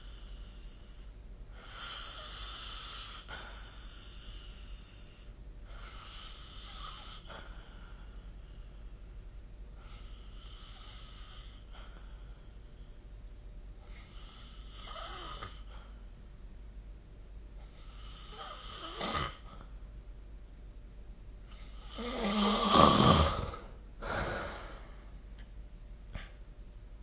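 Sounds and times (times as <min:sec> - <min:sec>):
person snoring: 0:13.9 - 0:15.7, 0:17.8 - 0:19.5, 0:21.6 - 0:24.9.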